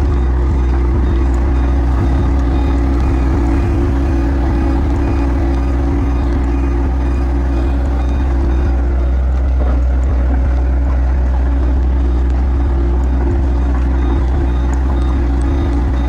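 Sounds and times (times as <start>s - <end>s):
heavy diesel engine running: 0.0s - 16.0s.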